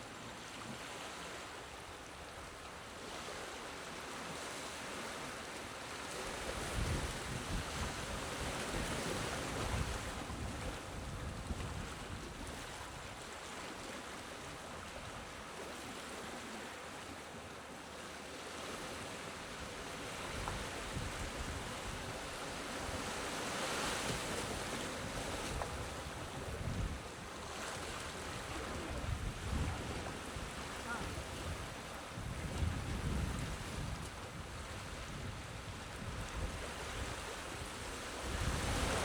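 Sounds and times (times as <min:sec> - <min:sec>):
gentle waves lapping on beach: 0:00.0 - 0:39.0
wind buffeting microphone: 0:28.4 - 0:37.2, 0:38.2 - 0:39.0.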